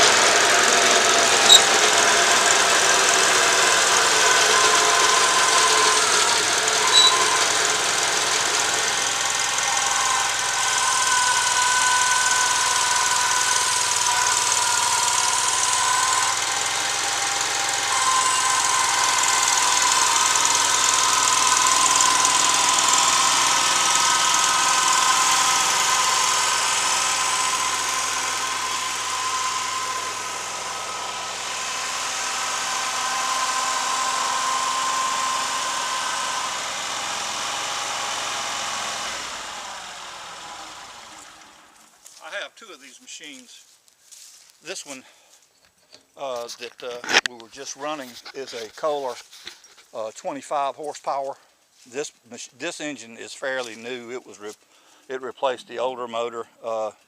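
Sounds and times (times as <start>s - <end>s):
stump grinder engine running: 0.0s - 42.2s
steady high whine: 0.1s - 38.5s.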